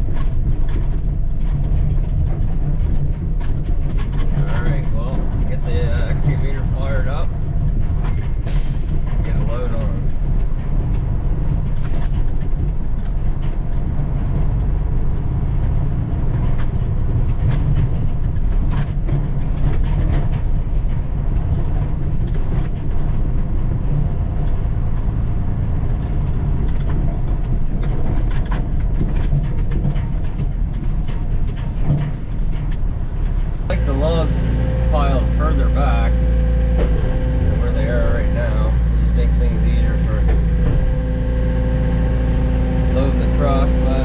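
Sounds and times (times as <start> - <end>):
cab and load rattling: 0.0 - 44.0
diesel truck engine running: 0.0 - 44.0.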